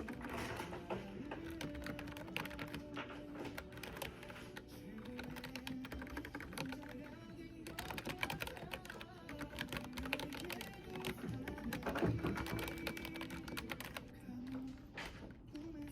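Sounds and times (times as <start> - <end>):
keyboard key clicks: 7.7 - 14.1.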